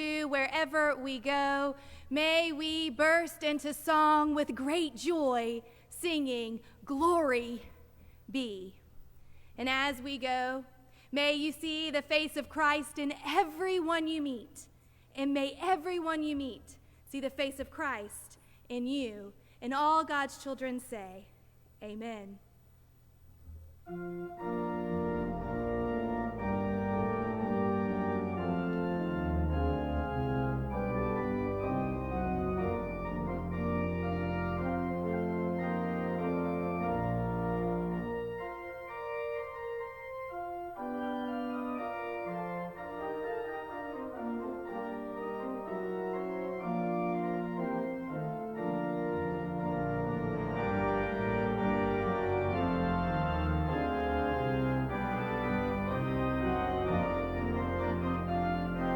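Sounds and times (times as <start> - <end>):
church organ chords: 23.8 - 58.9.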